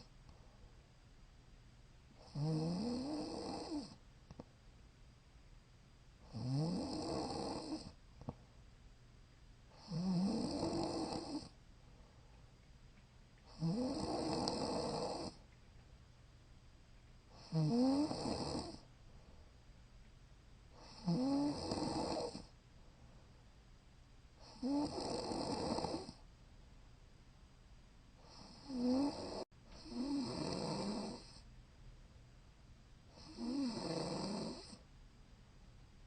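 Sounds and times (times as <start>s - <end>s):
woman snoring: 2.2s - 4.0s, 6.3s - 8.0s, 9.8s - 11.6s, 13.5s - 15.4s, 17.4s - 18.8s, 20.8s - 22.5s, 24.4s - 26.2s, 28.2s - 31.4s, 33.2s - 34.8s.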